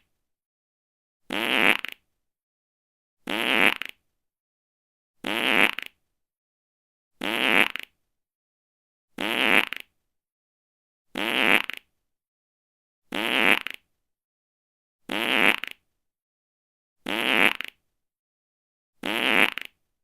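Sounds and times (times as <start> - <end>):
fart sound: 1.3 - 2.0, 3.2 - 4.0, 5.2 - 6.0, 7.2 - 8.0, 9.2 - 9.9, 11.1 - 11.9, 13.1 - 13.9, 15.1 - 15.8, 17.0 - 17.8, 19.0 - 19.8.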